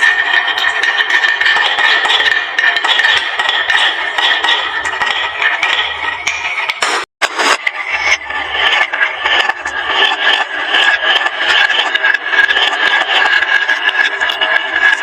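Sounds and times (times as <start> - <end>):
glass marbles rolling down wooden track: 8.5 - 15.0.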